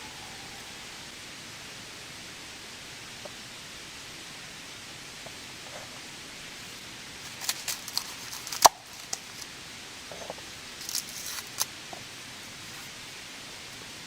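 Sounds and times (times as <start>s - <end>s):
steady rain hiss: 0.0s - 14.0s
sharp clicks and snaps: 7.3s - 9.5s.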